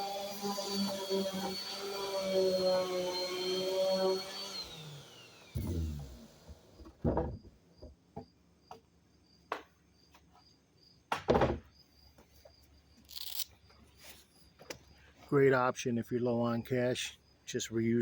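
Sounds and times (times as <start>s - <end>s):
electric sander spinning down: 0.0s - 6.8s
wood knocking and clattering: 6.5s - 8.8s, 11.1s - 11.7s.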